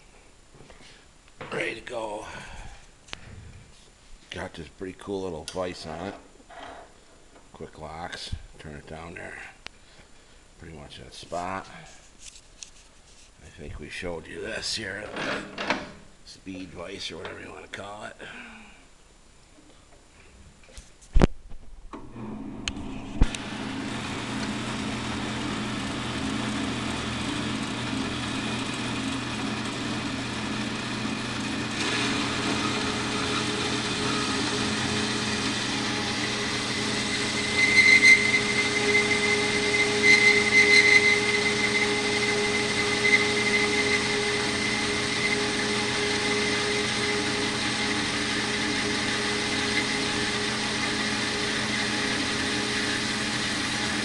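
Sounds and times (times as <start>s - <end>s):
bandsaw motor hum: 22.2s - 54.0s
blade squealing cutting metal: 36.1s - 47.6s.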